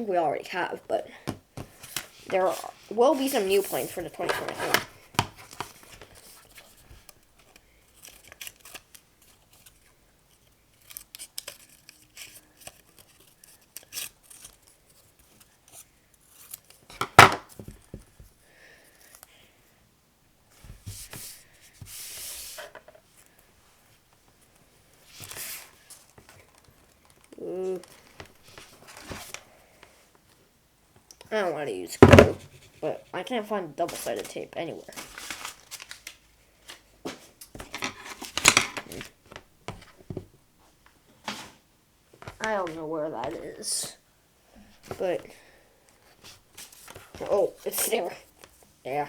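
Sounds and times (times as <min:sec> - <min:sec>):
scissors snipping paper: 0:07.5 - 0:16.8.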